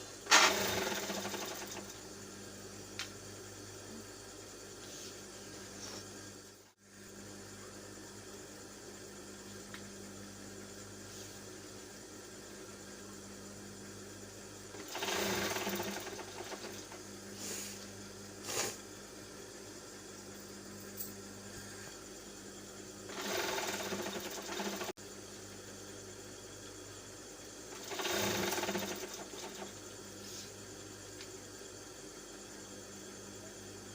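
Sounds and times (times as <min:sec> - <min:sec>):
low electrical hum: 0:00.0 - 0:24.2, 0:25.0 - 0:33.9
person blowing nose: 0:18.4 - 0:18.8.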